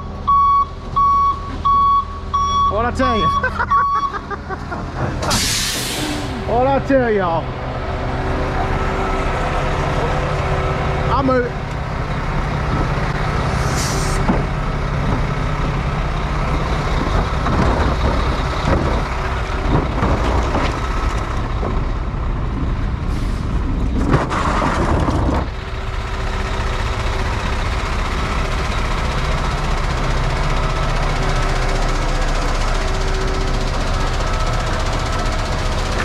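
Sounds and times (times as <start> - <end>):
heavy vehicle engine running: 0.0 - 36.0
short hiss: 5.3 - 6.3.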